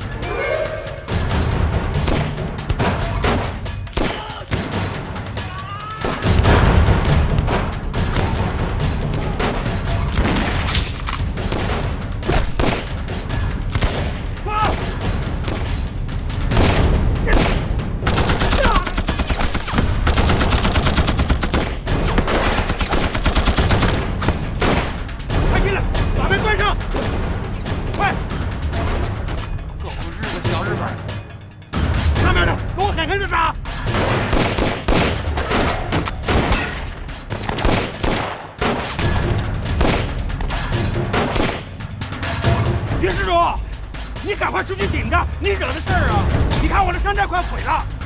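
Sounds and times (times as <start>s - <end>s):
machine guns and rifles firing: 1.5s - 25.8s, 33.8s - 42.5s
gunfire: 1.9s - 5.4s, 6.0s - 15.8s, 16.4s - 25.6s, 26.8s - 29.6s, 33.8s - 42.4s.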